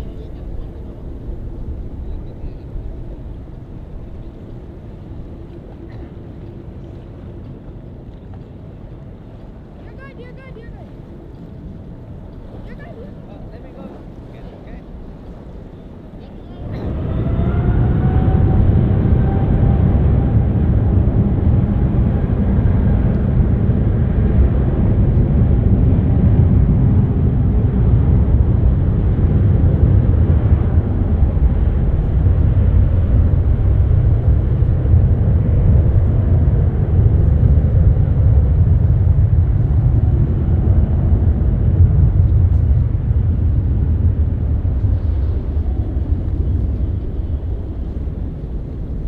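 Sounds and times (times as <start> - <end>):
faint engine whine: 0.0 - 49.0
jet engines rumbling: 0.0 - 49.0.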